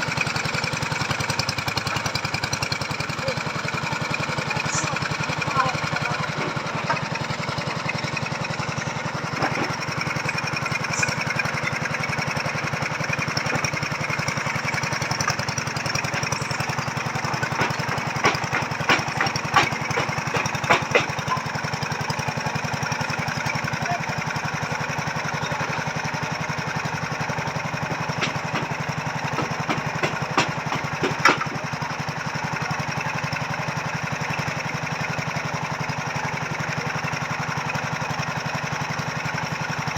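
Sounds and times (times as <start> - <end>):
earth drill engine running: 0.0 - 39.9
sharp knocks: 9.4 - 11.3, 16.1 - 21.5, 27.8 - 31.8.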